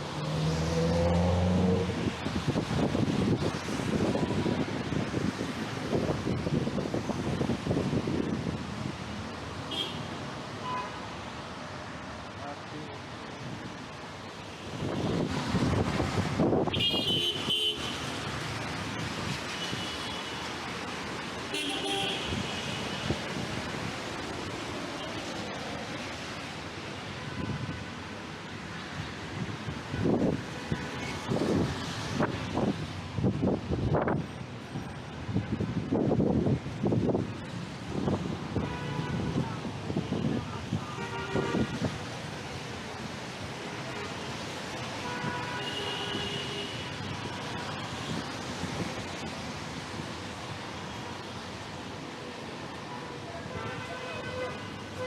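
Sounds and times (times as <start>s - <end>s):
city street traffic: 0.0s - 55.0s
strong wind and rain: 0.0s - 55.0s
wind buffeting microphone: 1.8s - 9.1s, 14.7s - 16.8s
vehicle horn tooting: 16.7s - 18.0s, 21.6s - 22.8s, 40.9s - 41.8s, 45.2s - 46.8s.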